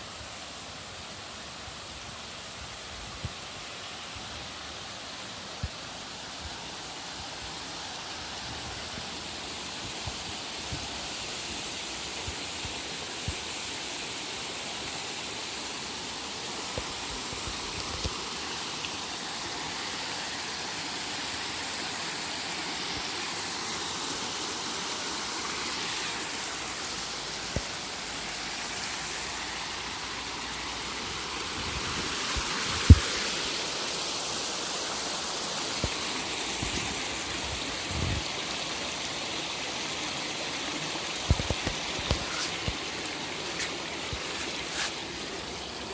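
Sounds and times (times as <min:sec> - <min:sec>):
running water rushing: 0:00.0 - 0:45.9.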